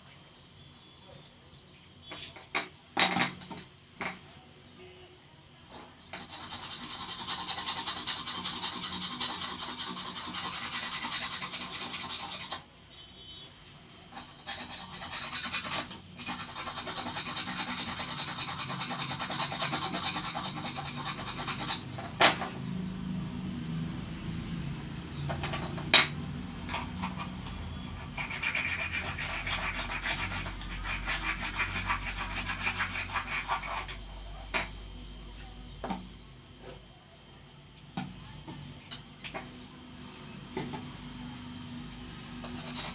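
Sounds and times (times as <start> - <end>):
abrasive rasping on metal: 6.2 - 12.7, 14.1 - 22.1, 26.7 - 34.8, 42.4 - 42.9.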